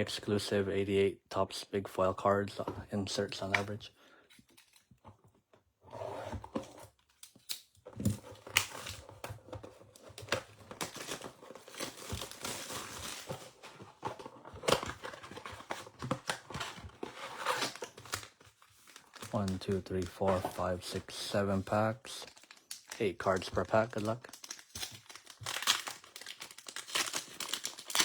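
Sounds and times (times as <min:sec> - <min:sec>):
plastic wrapping crinkling and tearing: 0:09.8 - 0:13.6, 0:14.6 - 0:20.8, 0:21.7 - 0:28.0
foil packs crackling: 0:17.8 - 0:28.0.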